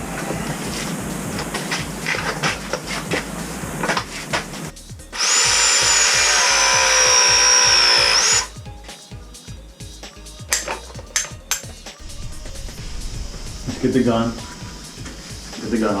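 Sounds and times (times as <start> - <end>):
power tool motor whining: 5.2 - 8.5.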